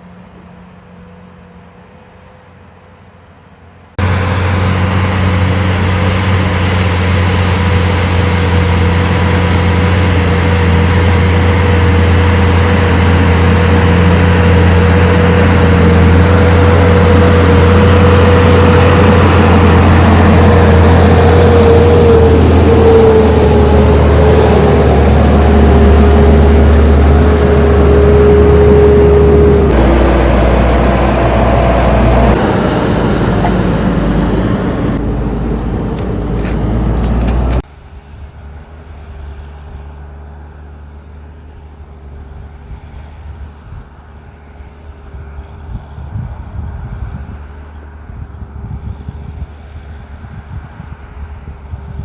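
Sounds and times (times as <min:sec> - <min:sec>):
tractor engine running: 0:04.0 - 0:37.7.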